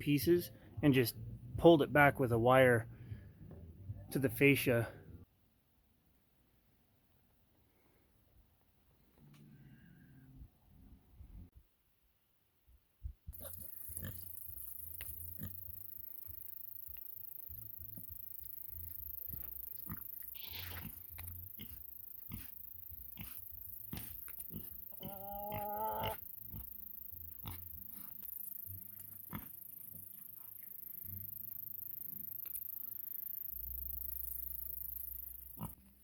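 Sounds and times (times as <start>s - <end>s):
pigs feeding and snuffling: 13.3s - 32.9s
pig call: 23.2s - 26.7s.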